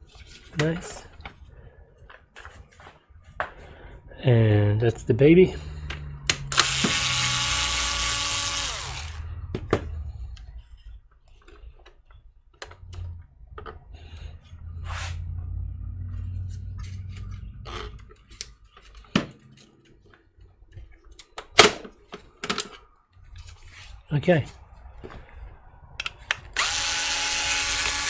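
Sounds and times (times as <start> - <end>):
small parts clicking: 6.3 - 9.3
electric screwdriver whirring: 6.4 - 9.3, 26.3 - 28.0.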